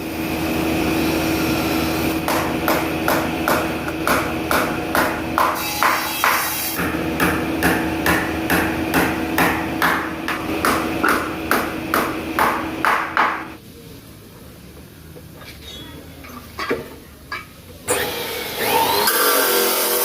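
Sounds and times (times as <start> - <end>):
hammer blows: 2.2 - 13.6.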